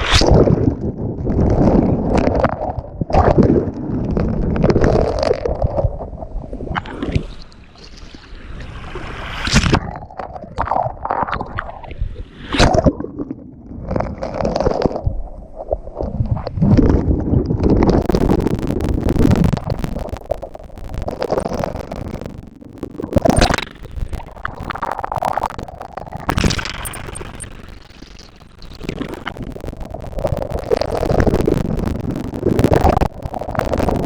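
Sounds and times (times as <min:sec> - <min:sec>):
wind rumble on microphone: 0:10.6 - 0:34.0.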